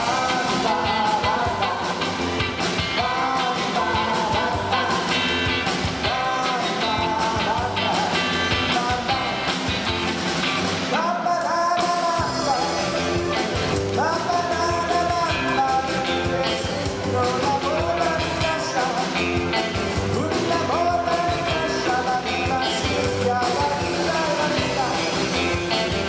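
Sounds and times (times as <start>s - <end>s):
person singing long notes: 0.0s - 2.3s
rock band music: 0.0s - 26.0s.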